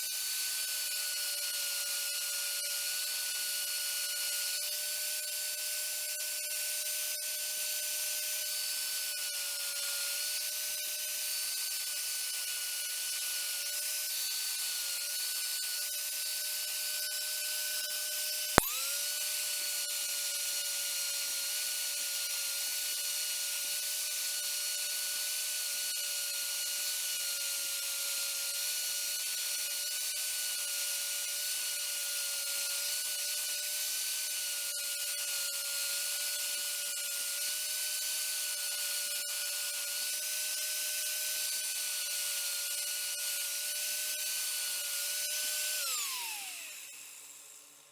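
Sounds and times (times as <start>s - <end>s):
rotary tool whining: 0.0s - 47.9s
sharp click: 18.6s - 19.0s.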